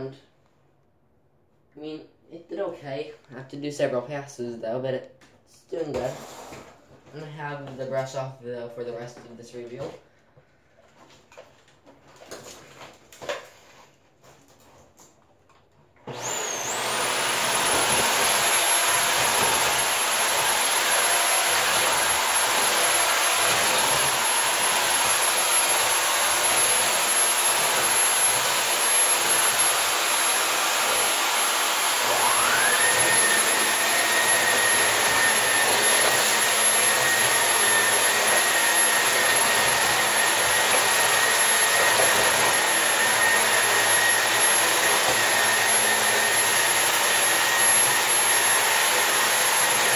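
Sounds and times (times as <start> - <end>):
vacuum cleaner motor whine: 16.0 - 49.9.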